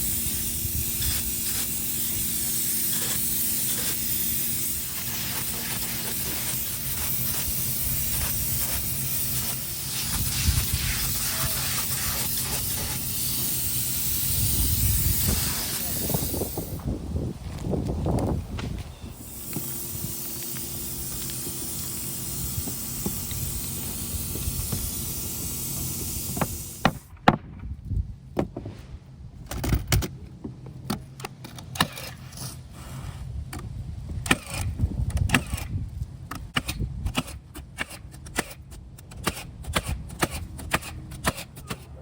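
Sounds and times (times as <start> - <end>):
steady hiss: 0.0 - 27.1.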